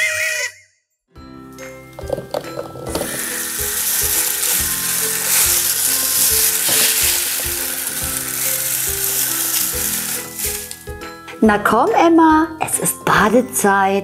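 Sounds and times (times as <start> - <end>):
background music with soft beat: 1.2 - 14.0
loud hiss: 2.9 - 10.9.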